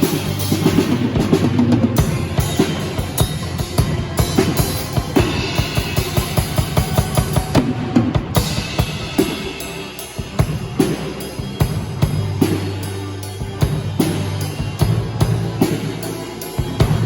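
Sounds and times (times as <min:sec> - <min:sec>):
drum kit beat: 0:00.0 - 0:17.0.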